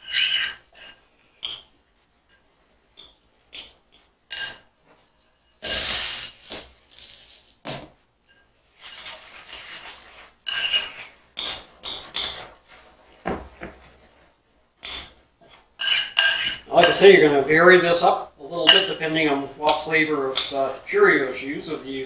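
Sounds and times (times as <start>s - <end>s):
utensil scraping a bowl: 0.0s - 1.7s, 5.6s - 7.6s, 8.3s - 14.2s, 14.8s - 22.0s.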